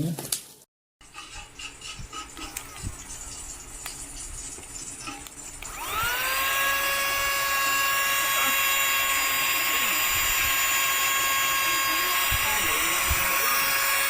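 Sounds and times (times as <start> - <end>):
mini vacuum cleaner whining: 5.2 - 14.0.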